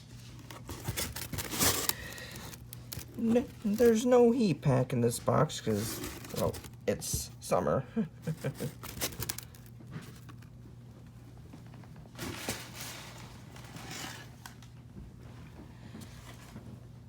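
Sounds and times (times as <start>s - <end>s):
packaging rustling and crinkling: 0.0s - 7.2s, 8.2s - 10.6s, 11.6s - 14.7s.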